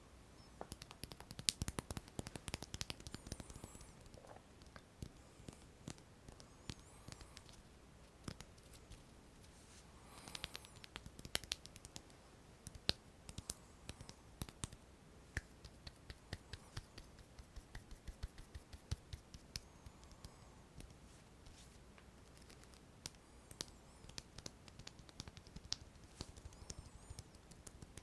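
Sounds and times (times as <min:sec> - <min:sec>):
fingertip taps and clicks: 0:00.6 - 0:03.8, 0:10.3 - 0:14.8, 0:22.4 - 0:28.0
scratchy rubbing: 0:15.4 - 0:19.6.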